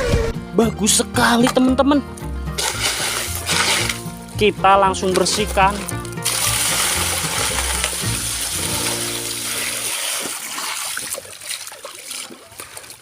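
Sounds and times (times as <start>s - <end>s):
water splashing over plastic toy: 2.6s - 4.3s, 5.1s - 13.0s.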